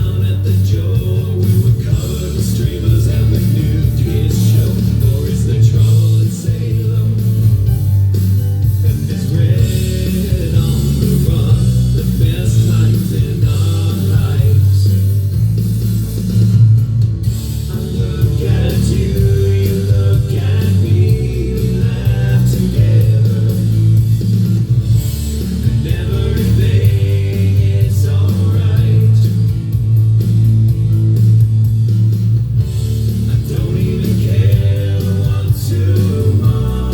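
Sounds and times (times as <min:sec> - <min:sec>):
person singing: 0:00.0 - 0:07.7, 0:08.8 - 0:15.1, 0:17.7 - 0:24.3, 0:25.7 - 0:29.5, 0:33.3 - 0:36.9
electric guitar: 0:00.0 - 0:36.9
heavy bass line: 0:00.0 - 0:36.9.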